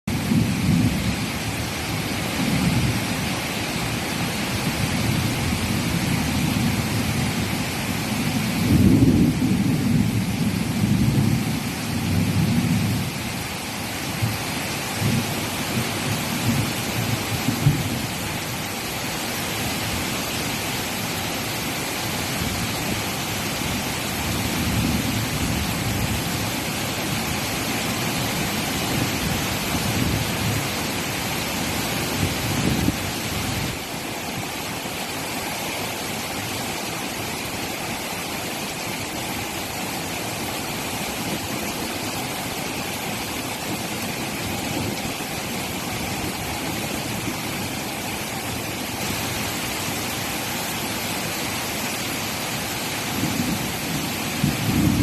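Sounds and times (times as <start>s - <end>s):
steady rain falling: 0.0s - 55.0s
low rolling thunder: 8.3s - 13.1s, 53.2s - 55.0s.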